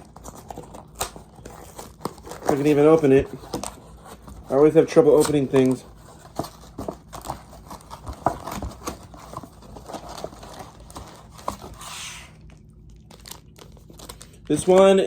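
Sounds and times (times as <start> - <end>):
plastic wrapper crinkling: 0.0 - 11.8, 12.4 - 15.0
wrapper tearing rustle: 12.4 - 15.0.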